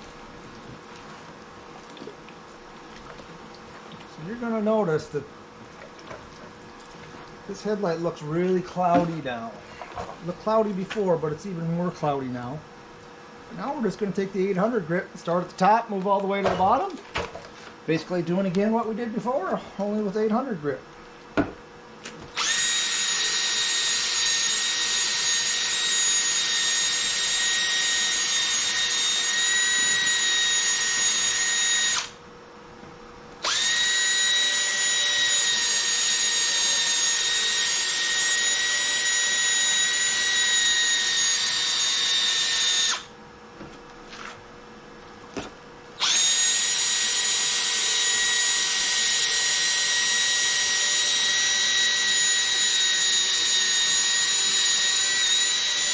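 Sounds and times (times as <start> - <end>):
cordless drill sanding whine: 22.3 - 32.2, 33.4 - 43.1, 46.0 - 55.9.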